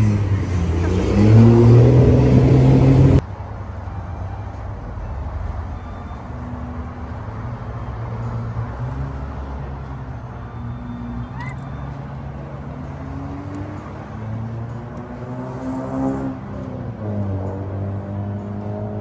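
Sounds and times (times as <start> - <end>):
car engine idling: 2.4 - 15.2.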